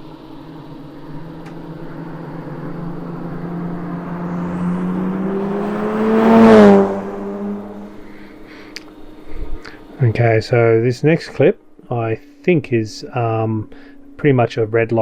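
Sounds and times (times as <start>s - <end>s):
car accelerating past: 0.4s - 8.5s.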